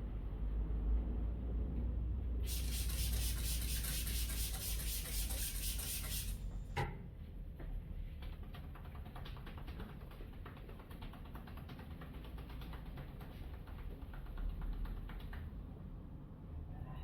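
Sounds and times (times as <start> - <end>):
scratchy rubbing of hair and skin: 2.5 - 6.4.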